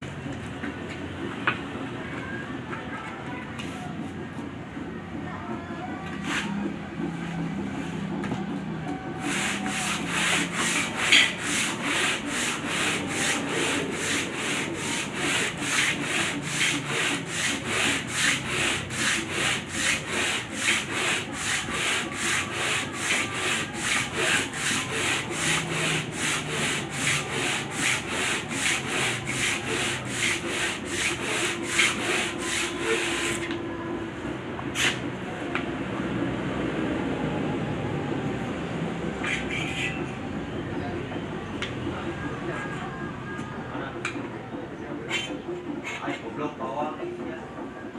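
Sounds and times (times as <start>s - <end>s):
hand sanding strokes: 9.1s - 33.5s.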